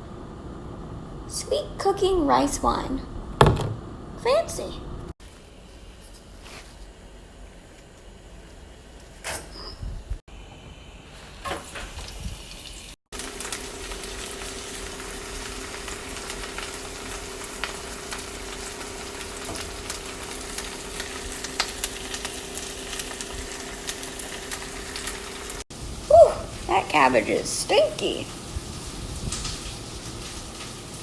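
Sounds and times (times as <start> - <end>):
cabbage sizzling in a hot pan: 11.2 - 31.0.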